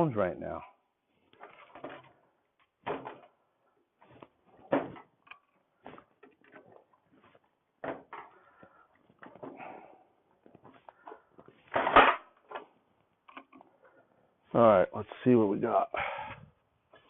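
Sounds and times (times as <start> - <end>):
tools clunking on workbench: 10.6 - 12.7.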